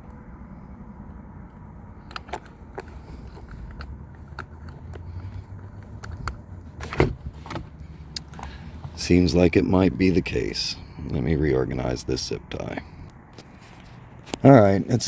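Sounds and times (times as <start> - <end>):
low steady hum: 0.0 - 15.0
hands clicking wiring plugs: 1.5 - 9.0.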